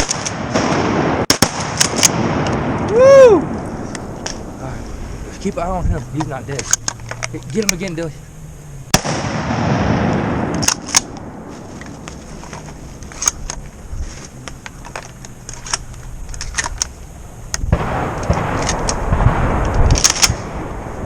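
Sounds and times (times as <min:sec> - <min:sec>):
wind noise on microphone: 0:02.0 - 0:07.3, 0:09.8 - 0:21.0.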